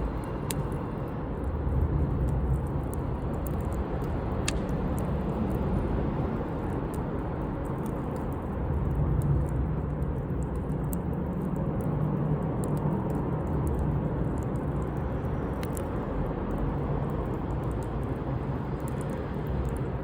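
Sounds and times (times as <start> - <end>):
campfire crackling: 0.0 - 20.0
wood popping: 4.4 - 5.0.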